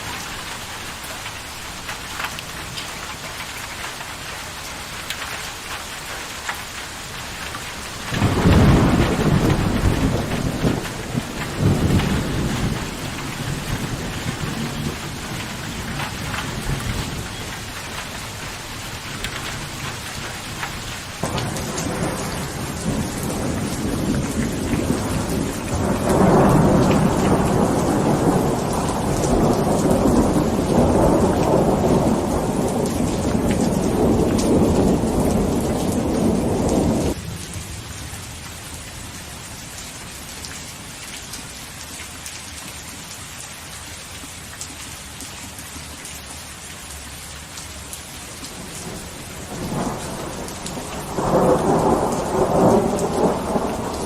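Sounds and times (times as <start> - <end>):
steady rain: 0.0 - 54.0
rolling thunder: 8.1 - 17.3, 21.2 - 37.2, 48.6 - 54.0.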